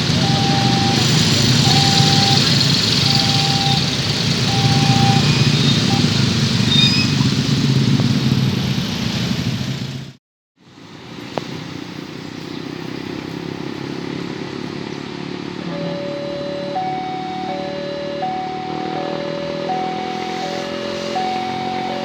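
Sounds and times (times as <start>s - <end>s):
rumble of vehicles passing: 0.0s - 22.0s
steady traffic noise: 0.0s - 22.0s.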